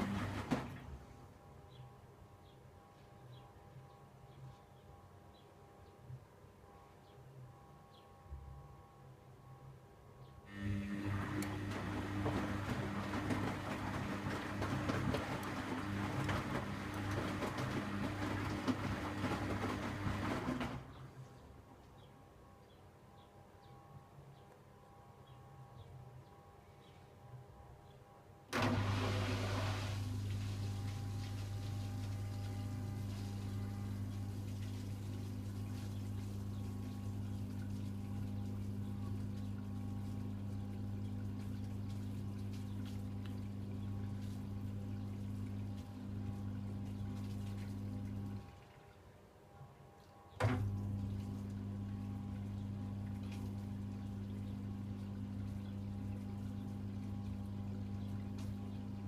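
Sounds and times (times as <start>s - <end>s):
water running: 0.0s - 0.9s, 10.6s - 20.9s, 28.6s - 49.0s, 50.4s - 59.0s
electrical hum: 0.0s - 59.0s
water rushing: 28.6s - 35.5s.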